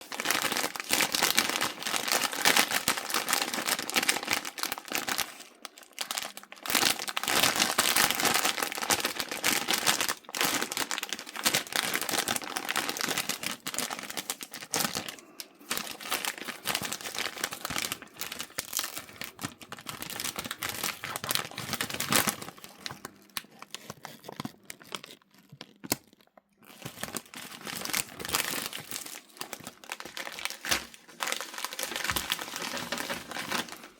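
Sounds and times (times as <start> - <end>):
packaging crinkling and tearing: 0.0 - 33.9.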